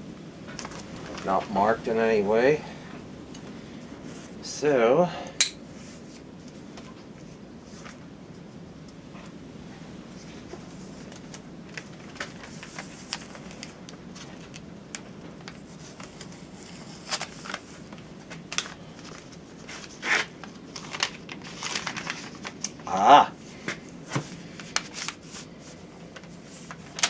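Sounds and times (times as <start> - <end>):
steady low hum: 0.0 - 27.0
packaging rustling and clicking: 10.8 - 22.8, 23.6 - 27.0.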